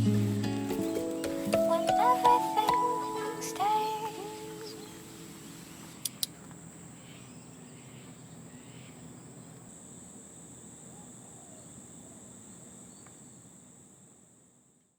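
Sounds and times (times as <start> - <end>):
flowing water hiss: 0.0 - 6.3
crickets chirping: 0.0 - 14.7
sharp clicks: 6.0 - 6.4.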